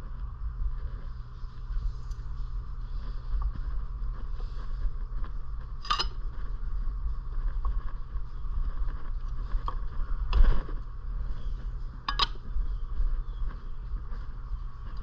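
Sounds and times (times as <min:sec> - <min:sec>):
steady low rumble: 0:00.0 - 0:15.0
hand tools clinking on metal: 0:05.8 - 0:06.2.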